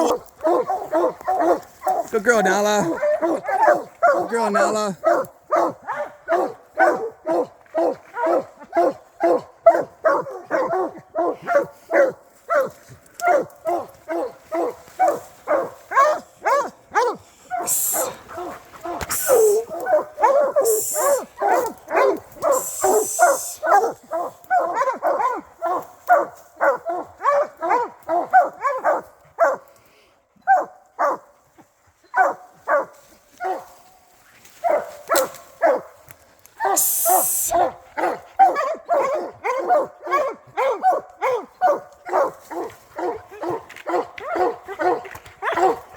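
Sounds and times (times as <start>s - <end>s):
hounds barking: 0.0s - 29.8s, 30.4s - 45.9s
short rustling hisses: 17.2s - 19.7s, 20.6s - 21.3s, 22.4s - 23.6s, 36.8s - 37.5s.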